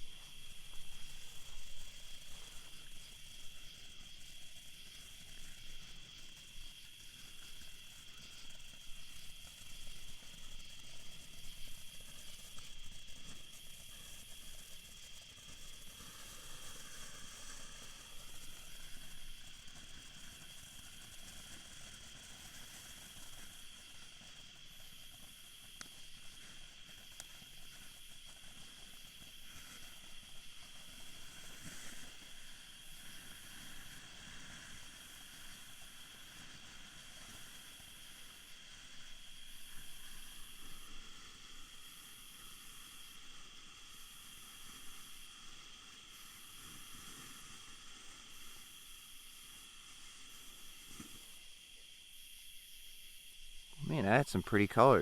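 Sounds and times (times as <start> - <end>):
firework crackles: 13.4 - 40.9, 53.8 - 55.0
firework fountain hissing: 13.4 - 52.7, 53.8 - 55.0.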